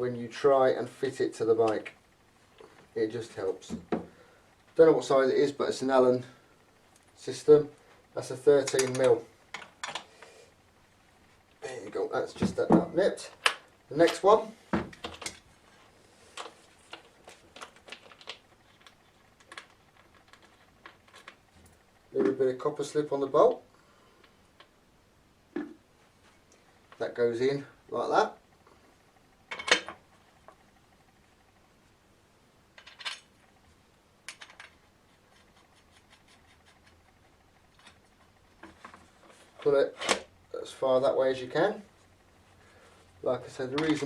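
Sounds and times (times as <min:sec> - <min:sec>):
metal parts clicking and tapping: 0:08.6 - 0:10.0, 0:32.8 - 0:33.3, 0:34.3 - 0:34.8.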